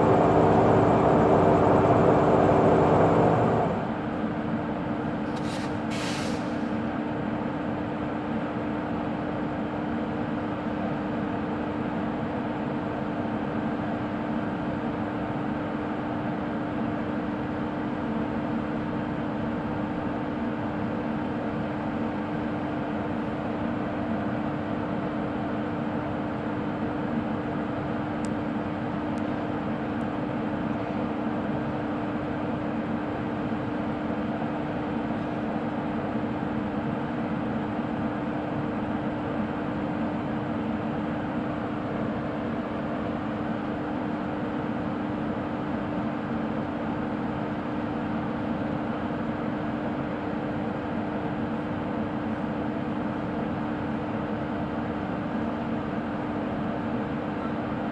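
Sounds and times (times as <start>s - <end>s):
even rushing noise: 0.0s - 4.1s
electric locomotive humming: 0.0s - 4.3s.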